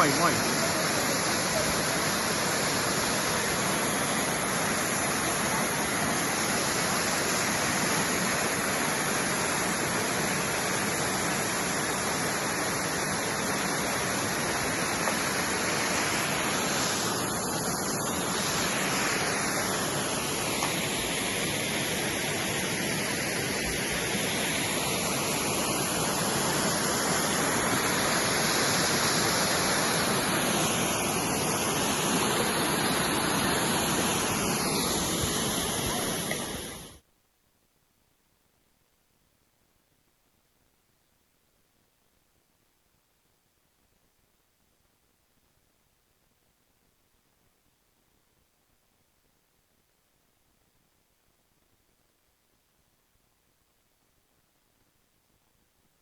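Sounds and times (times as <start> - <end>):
waterfall rushing: 0.0 - 37.0.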